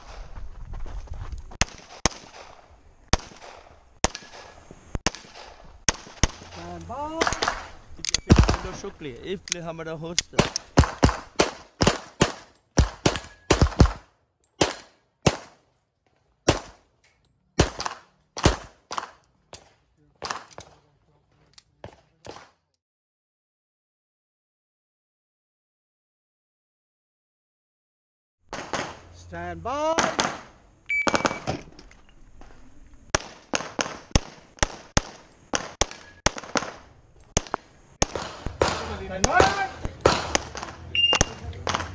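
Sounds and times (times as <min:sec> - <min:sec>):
handgun shots: 0:01.6 - 0:08.8, 0:10.2 - 0:14.0, 0:14.6 - 0:15.6, 0:17.6 - 0:19.2, 0:37.4 - 0:41.9.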